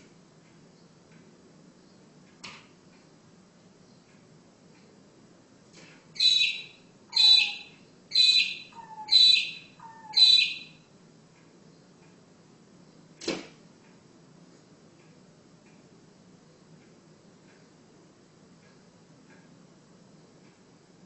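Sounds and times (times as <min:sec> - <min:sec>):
bird harsh calls: 0:06.2 - 0:10.8.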